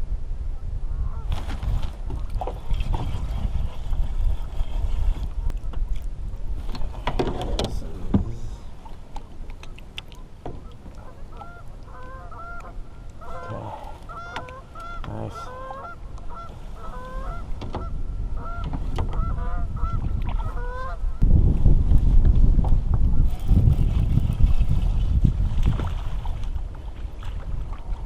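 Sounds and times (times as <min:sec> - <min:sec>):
low wind rumble: 0:00.0 - 0:28.0
geese honking: 0:10.6 - 0:21.2.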